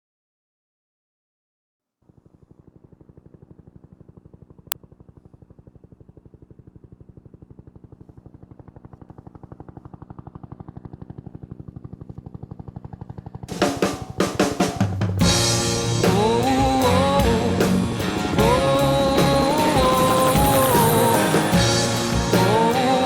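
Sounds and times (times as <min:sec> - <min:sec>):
helicopter rotor beating: 0:02.1 - 0:23.0
drum kit playing: 0:13.5 - 0:23.0.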